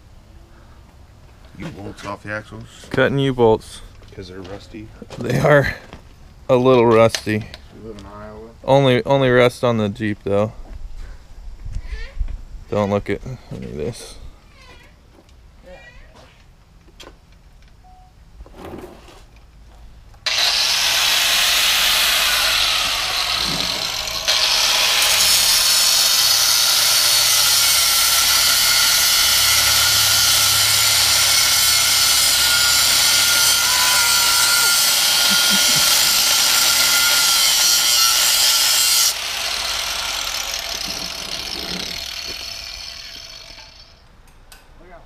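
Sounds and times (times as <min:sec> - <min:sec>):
power tool cutting steel: 0:20.3 - 0:44.0.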